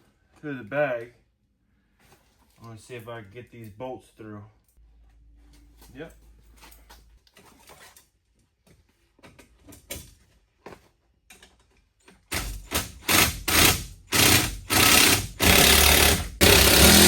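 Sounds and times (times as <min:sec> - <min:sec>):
power driver short bursts: 0:12.4 - 0:17.0.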